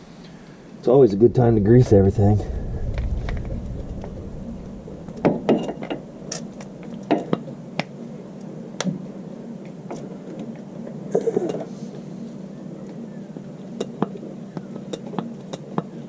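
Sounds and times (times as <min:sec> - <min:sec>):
steady low hum: 0:00.0 - 0:11.1.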